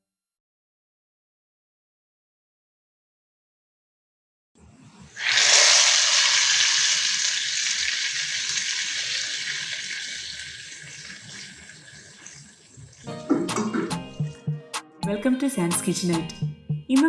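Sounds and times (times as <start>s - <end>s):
water running: 5.2s - 14.3s.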